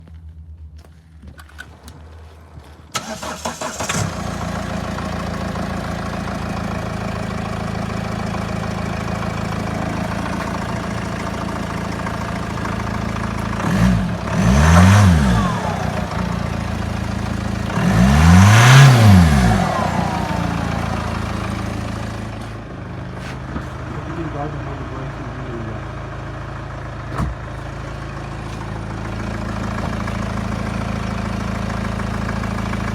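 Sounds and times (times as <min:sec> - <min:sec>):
diesel engine idling and revving: 0:00.0 - 0:32.9.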